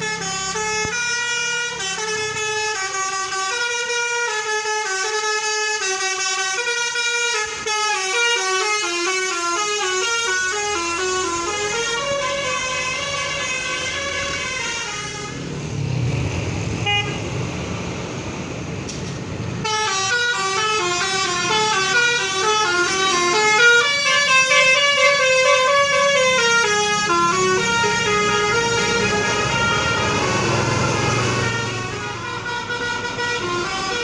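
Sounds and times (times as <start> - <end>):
bus engine rumble: 0.0 - 34.0
musical air horn melody: 16.8 - 17.2, 19.6 - 34.0.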